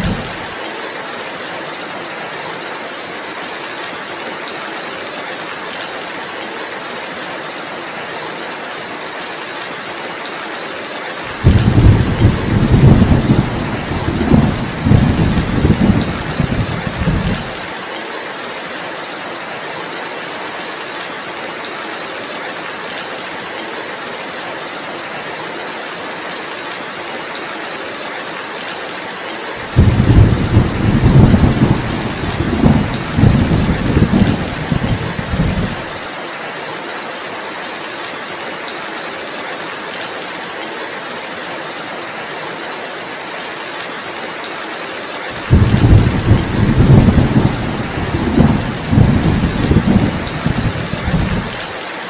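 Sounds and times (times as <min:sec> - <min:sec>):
thunder rumbling: 0:00.0 - 0:00.4, 0:11.3 - 0:17.6, 0:29.6 - 0:35.9, 0:45.4 - 0:51.6
heavy rain: 0:00.0 - 0:52.0.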